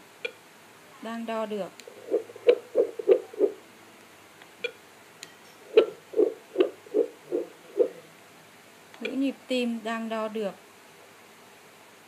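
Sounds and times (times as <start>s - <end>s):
fetal heartbeat whooshing pulse: 1.9s - 3.6s, 5.7s - 8.0s.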